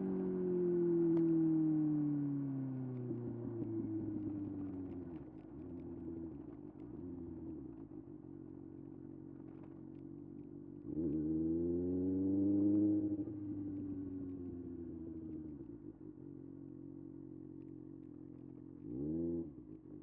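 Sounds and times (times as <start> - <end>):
motorcycle engine revving: 10.8 - 15.7, 18.2 - 20.0.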